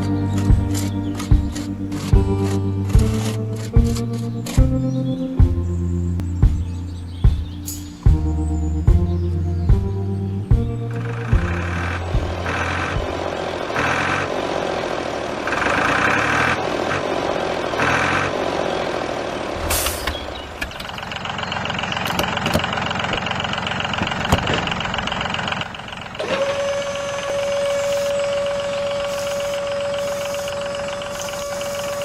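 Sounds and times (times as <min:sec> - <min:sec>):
truck engine running: 0:00.0 - 0:32.0
sharp air hiss: 0:19.6 - 0:20.1, 0:27.4 - 0:32.0.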